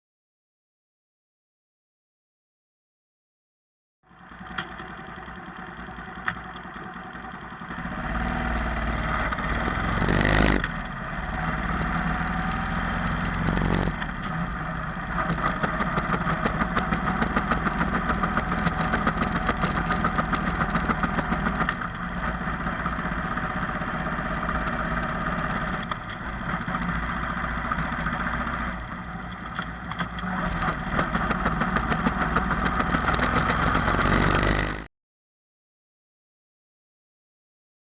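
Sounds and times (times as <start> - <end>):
motorcycle engine running: 4.1 - 34.9
failing gearbox noise: 7.9 - 14.2, 15.1 - 28.9, 30.2 - 34.9.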